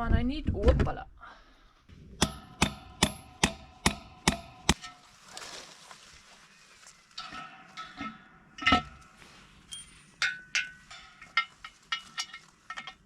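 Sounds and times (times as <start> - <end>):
hammer striking metal bolt: 2.2 - 4.9.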